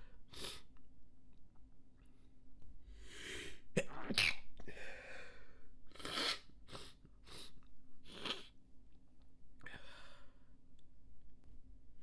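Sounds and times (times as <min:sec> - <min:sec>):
person breathing: 0:02.9 - 0:03.6, 0:04.7 - 0:05.6.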